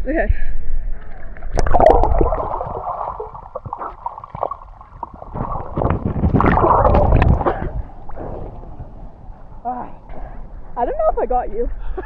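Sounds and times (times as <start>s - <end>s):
water sloshing and splashing: 1.0s - 9.6s
wind buffeting microphone: 1.5s - 12.0s.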